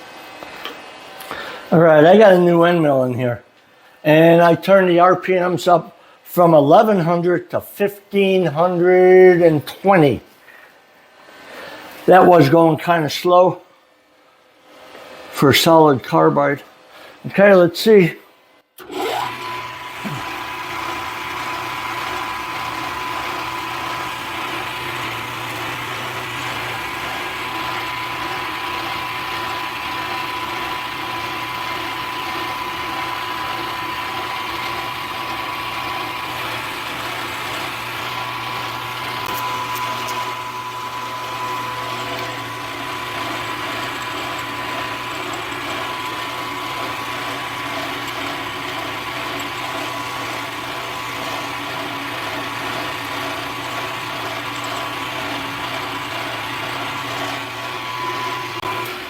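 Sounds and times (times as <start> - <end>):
milling machine hum and whine: 18.8 - 59.0.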